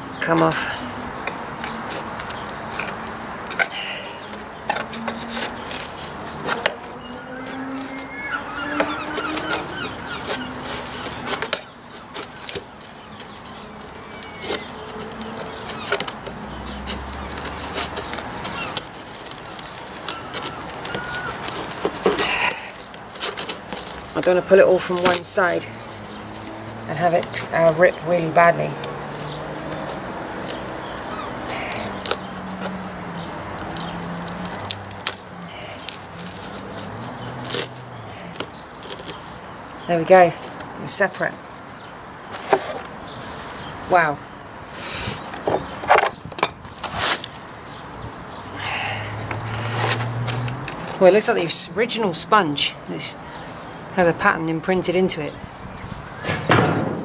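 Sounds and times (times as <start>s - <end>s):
squeaky creaks: 0.0s - 40.8s
foam padding crackling and tearing: 0.0s - 44.2s, 45.2s - 48.5s, 49.3s - 52.2s
rustling: 0.0s - 52.0s.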